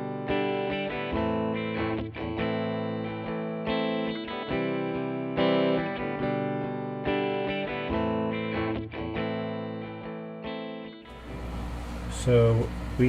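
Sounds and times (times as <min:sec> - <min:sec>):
electric guitar music: 0:00.0 - 0:13.0.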